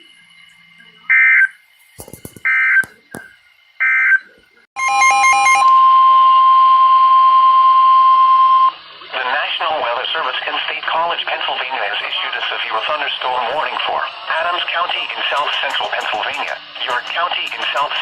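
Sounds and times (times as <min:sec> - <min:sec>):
pulsing beeps: 0:02.4 - 0:08.8
weather radio alarm tone: 0:04.8 - 0:08.8
digital data bursts: 0:08.7 - 0:18.0.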